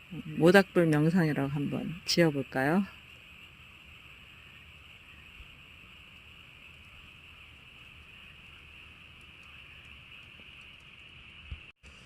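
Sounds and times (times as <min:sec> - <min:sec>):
campfire hissing and crackling: 0:00.0 - 0:12.0.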